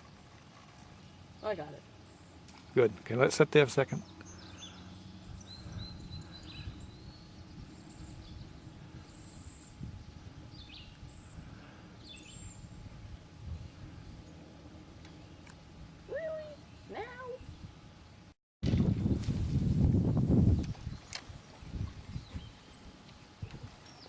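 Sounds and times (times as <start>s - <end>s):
low steady rumble: 0.0s - 24.0s
birds chirping and whistling: 4.0s - 12.8s.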